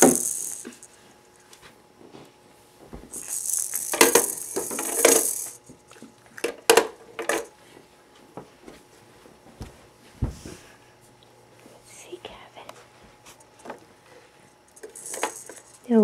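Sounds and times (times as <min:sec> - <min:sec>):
toy gumball machine rattling: 0:00.0 - 0:00.9, 0:03.2 - 0:05.6, 0:07.2 - 0:07.5, 0:14.7 - 0:16.0.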